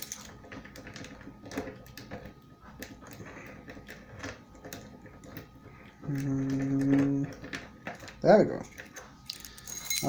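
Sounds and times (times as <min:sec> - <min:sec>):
key rattling in a lock: 0:08.0 - 0:10.0.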